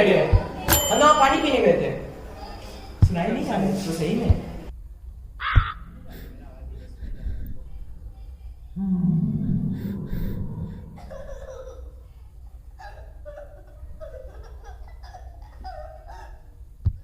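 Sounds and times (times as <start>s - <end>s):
people laughing and giggling: 10.9s - 16.6s.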